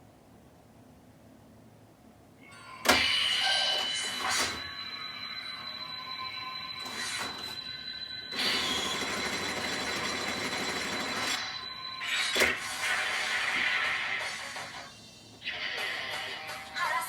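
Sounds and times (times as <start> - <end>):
pachinko machine rattling clatter: 8.4 - 11.4.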